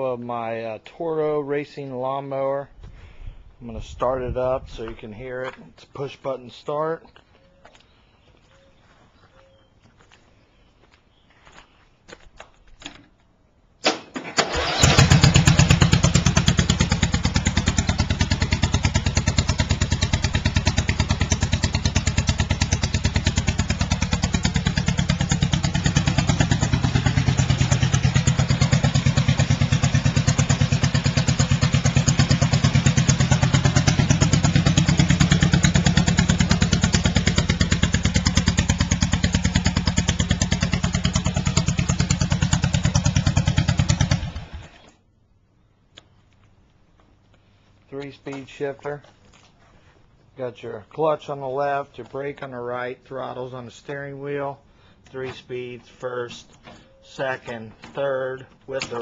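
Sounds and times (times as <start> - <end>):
lawnmower engine running: 13.9 - 44.9.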